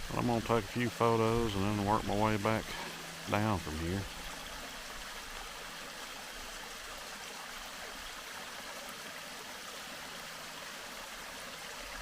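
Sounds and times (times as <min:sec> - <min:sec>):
waterfall rushing: 0:00.0 - 0:09.5.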